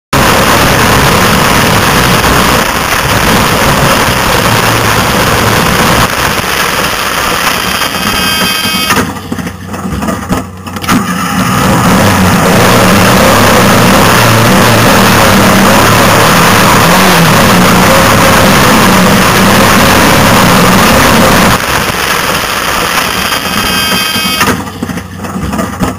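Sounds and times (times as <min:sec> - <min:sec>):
heavy rush of noise: 0:00.1 - 0:25.9
race vehicle engine running hard: 0:00.1 - 0:25.9.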